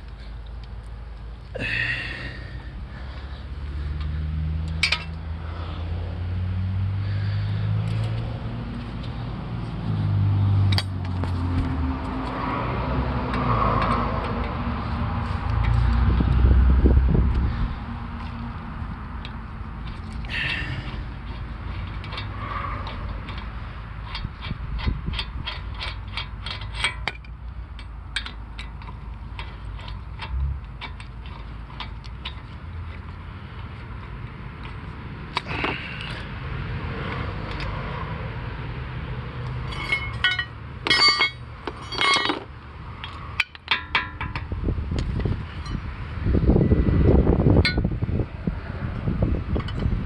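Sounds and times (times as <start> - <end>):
axle joint clicking: 19.2 - 36.2
ringing metallic clinks: 39.7 - 42.4.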